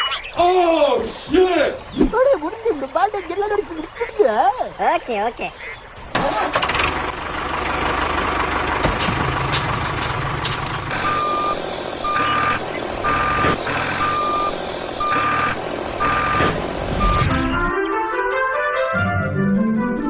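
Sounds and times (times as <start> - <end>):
engine running: 6.0 - 17.7
reversing alarm beeping: 8.8 - 17.7.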